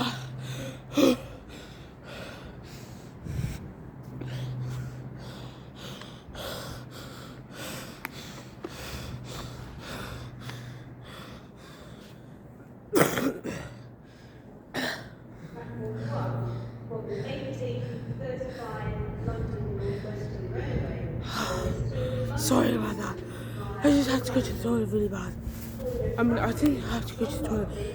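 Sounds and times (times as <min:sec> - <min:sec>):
person breathing hard: 0:00.0 - 0:12.4, 0:21.2 - 0:22.4
steady low hum: 0:00.0 - 0:27.9.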